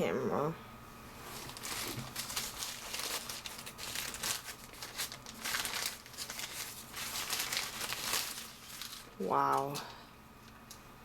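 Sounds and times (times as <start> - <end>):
packaging crinkling and rustling: 1.2 - 9.9.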